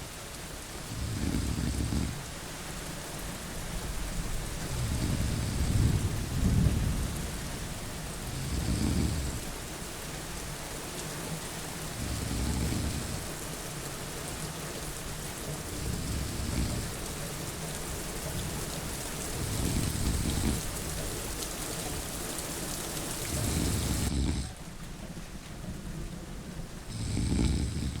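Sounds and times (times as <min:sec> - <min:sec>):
heavy rain: 0:00.0 - 0:28.0
low snoring: 0:00.9 - 0:02.3, 0:04.5 - 0:07.3, 0:08.1 - 0:09.7, 0:11.9 - 0:13.4, 0:15.6 - 0:17.4, 0:19.2 - 0:21.0, 0:23.2 - 0:24.6, 0:26.9 - 0:28.0.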